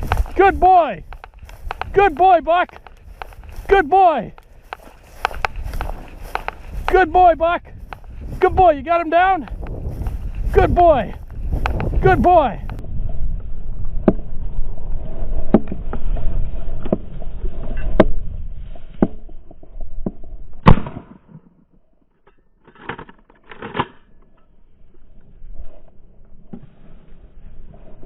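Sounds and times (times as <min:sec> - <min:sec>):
wind buffeting microphone: 0:00.0 - 0:20.6.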